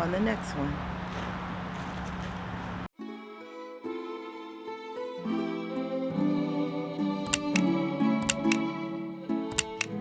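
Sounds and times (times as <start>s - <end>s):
sharp percussive ticks: 7.3s - 7.6s, 8.2s - 8.6s, 9.5s - 10.0s.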